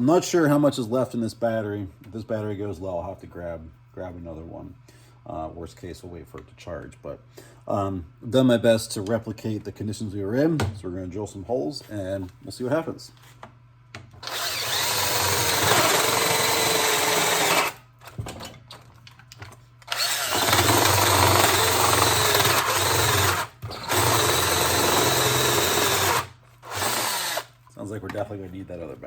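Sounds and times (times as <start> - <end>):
cordless drill boring through wood: 14.2 - 17.8, 19.9 - 27.5.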